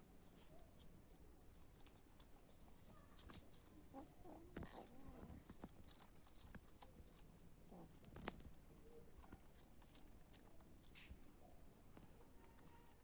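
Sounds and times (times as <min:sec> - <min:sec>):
light ticks and rustles: 0:00.1 - 0:13.0.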